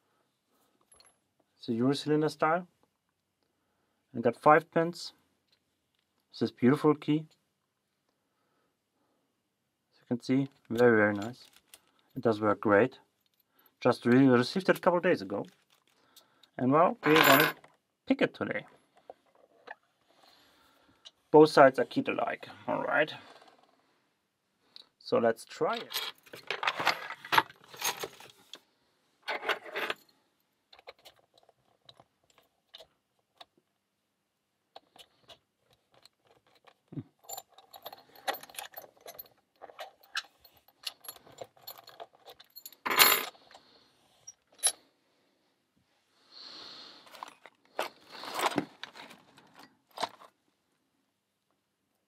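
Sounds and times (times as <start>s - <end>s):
metallic clicks and rattles of lock picks: 30.7s - 33.5s, 34.7s - 43.6s.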